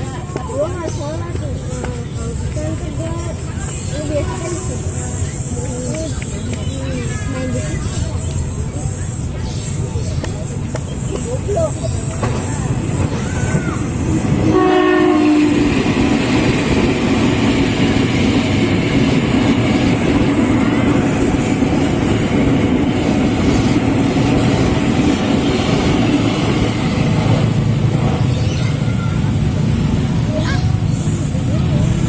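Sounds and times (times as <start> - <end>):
train rumbling past: 0.0 - 32.0
train horn blast: 14.3 - 16.0.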